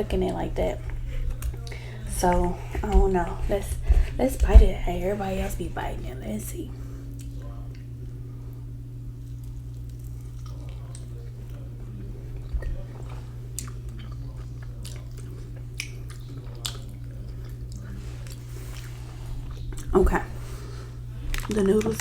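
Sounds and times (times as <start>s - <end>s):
steady low hum: 0.0s - 22.0s
person chewing sausage: 0.8s - 2.1s, 9.2s - 22.0s.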